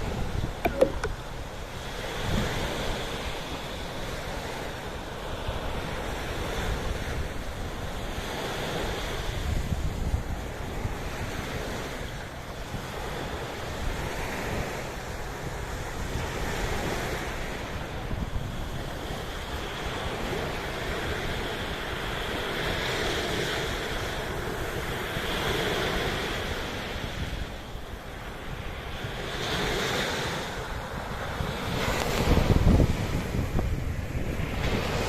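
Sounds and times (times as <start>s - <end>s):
wind buffeting microphone: 28.6s - 35.0s.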